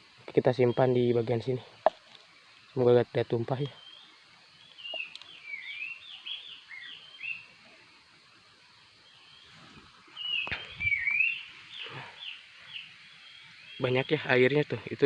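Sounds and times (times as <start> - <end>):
bird singing whistled notes: 3.6 - 7.6, 8.8 - 14.5.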